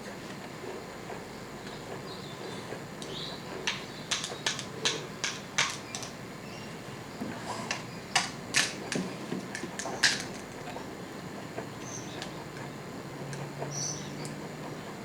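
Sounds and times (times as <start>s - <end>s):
sharp clicks and taps: 3.0s - 6.2s.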